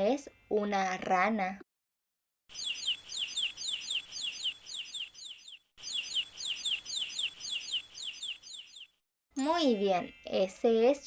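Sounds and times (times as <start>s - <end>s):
chicks peeping: 2.6s - 8.9s.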